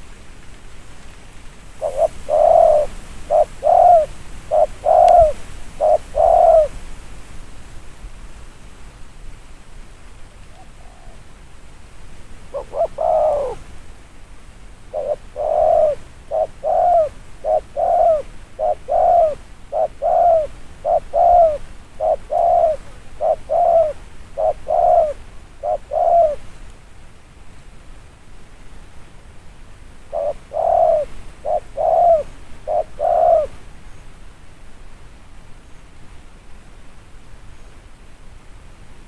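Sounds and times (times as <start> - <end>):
dove cooing: 1.8 - 6.8, 10.5 - 11.3, 12.5 - 13.7, 14.9 - 26.4, 30.1 - 33.6.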